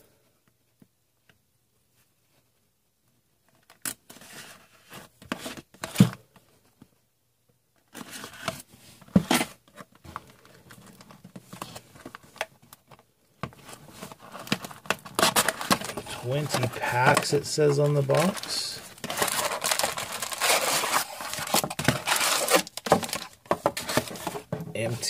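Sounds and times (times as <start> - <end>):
packaging tearing and crinkling: 14.2 - 24.3.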